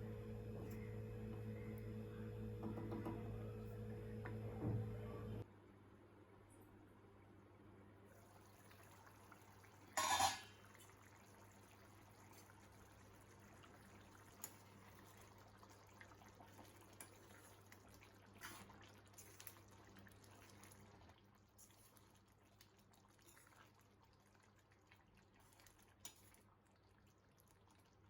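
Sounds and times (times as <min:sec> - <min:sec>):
steady low hum: 0:00.0 - 0:05.4.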